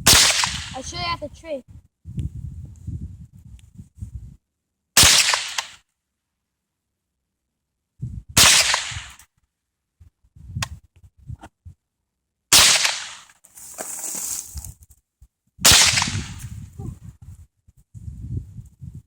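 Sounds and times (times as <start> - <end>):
rifle shots with echo: 0.0 - 0.8, 5.0 - 5.8, 8.4 - 9.2, 12.5 - 13.3, 15.7 - 16.4.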